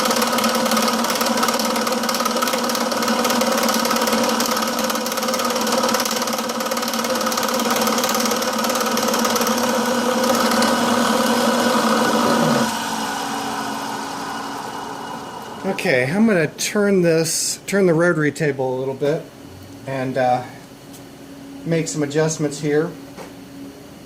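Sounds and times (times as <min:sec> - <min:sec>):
milling machine running: 0:00.0 - 0:17.0.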